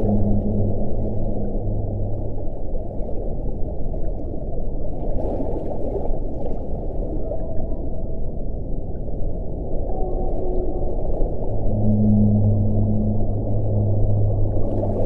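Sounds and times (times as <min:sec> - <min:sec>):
faint thin higher tone: 0:00.0 - 0:02.5, 0:11.5 - 0:15.0
low steady hum: 0:00.0 - 0:15.0
low underwater rumble: 0:00.0 - 0:15.0.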